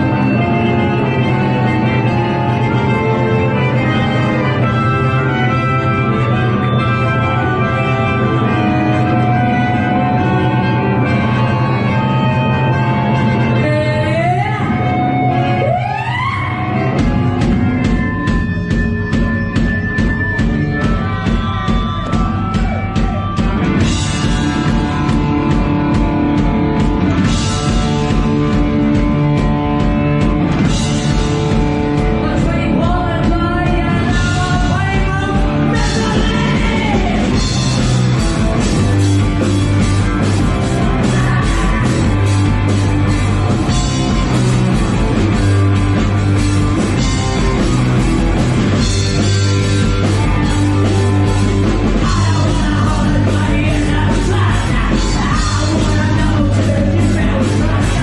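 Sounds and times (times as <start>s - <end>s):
punk rock band playing live: 0.0s - 58.0s
singer yelling: 32.3s - 37.4s, 40.6s - 42.4s.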